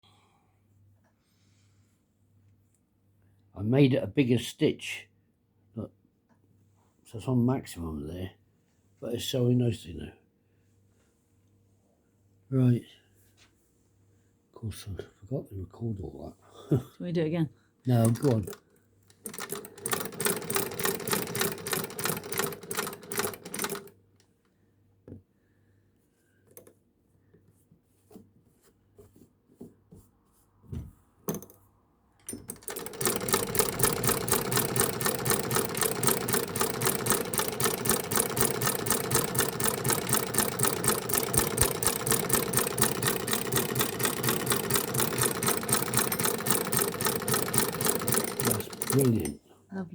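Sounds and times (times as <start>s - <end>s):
sewing machine stitching: 17.9s - 24.0s, 32.2s - 49.4s.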